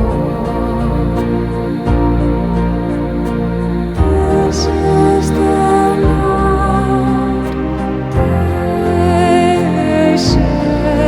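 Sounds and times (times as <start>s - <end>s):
gentle new-age music: 0.0s - 11.0s.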